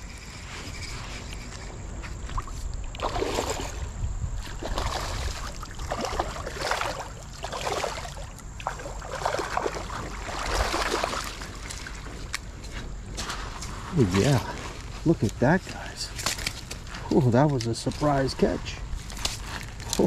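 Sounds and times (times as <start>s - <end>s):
fish splashing in creek water: 2.2s - 12.1s.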